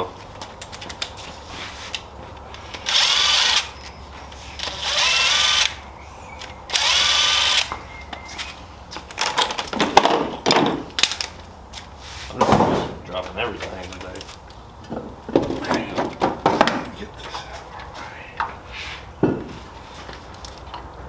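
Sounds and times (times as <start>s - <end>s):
power tool motor whirring: 2.7s - 7.9s.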